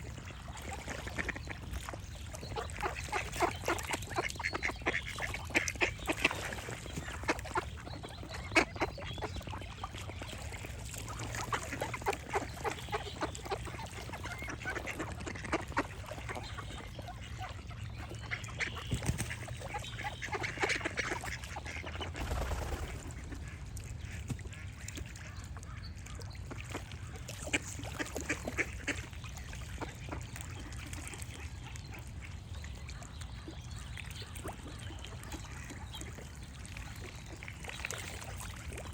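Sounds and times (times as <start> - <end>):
ducks quacking: 2.4 - 29.1
low steady rumble: 22.0 - 25.8.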